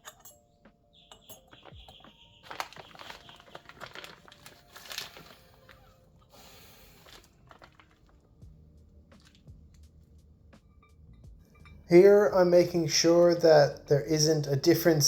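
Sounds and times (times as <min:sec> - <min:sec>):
rustling and crinkling: 0:01.3 - 0:08.4, 0:09.1 - 0:10.0.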